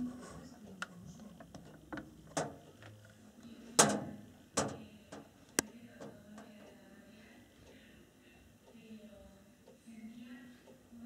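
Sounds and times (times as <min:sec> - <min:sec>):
sharp knocks and clatters: 0:01.9 - 0:02.6.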